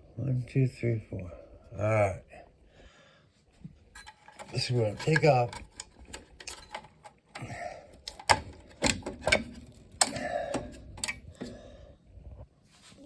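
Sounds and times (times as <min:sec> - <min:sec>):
plastic connectors clicking: 0:04.4 - 0:11.6.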